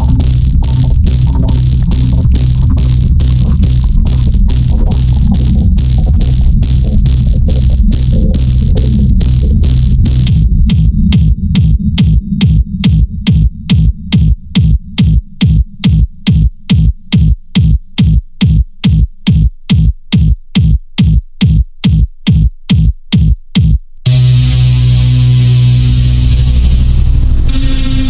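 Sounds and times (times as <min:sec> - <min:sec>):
low drone: 0:00.0 - 0:14.1, 0:24.1 - 0:28.0
industrial electronic beat: 0:00.0 - 0:28.0.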